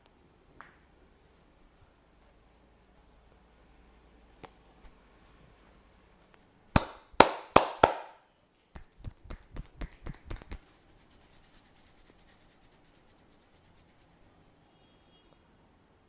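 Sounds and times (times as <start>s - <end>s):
hands slapping body: 6.8s - 8.2s, 8.8s - 10.6s
light patting on body: 8.8s - 14.2s.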